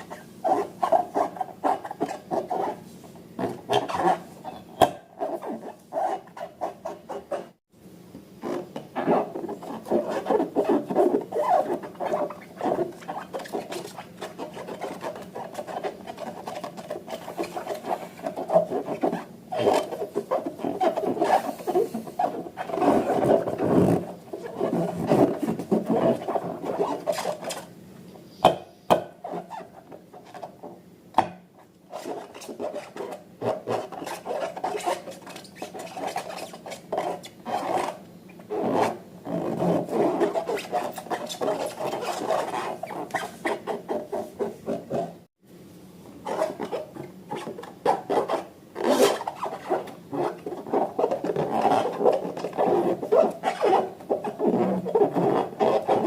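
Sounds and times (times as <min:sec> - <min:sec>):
slime squishing and rubbing: 0:08.4 - 0:27.7, 0:38.6 - 0:45.2.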